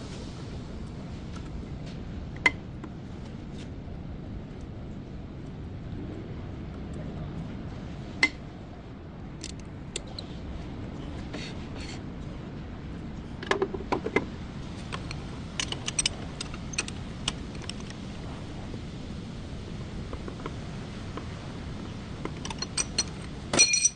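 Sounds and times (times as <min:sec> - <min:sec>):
steady low hum: 0:00.0 - 0:23.9
light metallic clinks: 0:15.0 - 0:17.9, 0:22.4 - 0:23.9.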